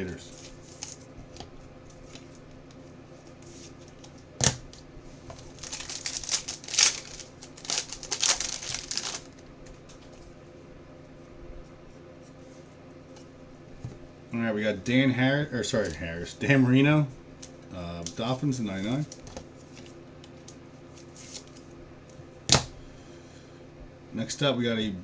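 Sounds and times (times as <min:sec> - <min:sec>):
plastic packaging crinkling: 0:03.8 - 0:10.1.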